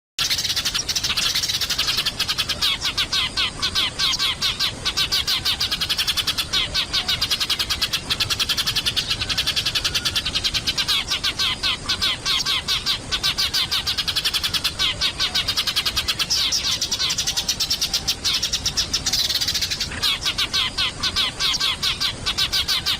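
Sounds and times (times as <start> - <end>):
sparrows chirping: 0.2 - 22.9.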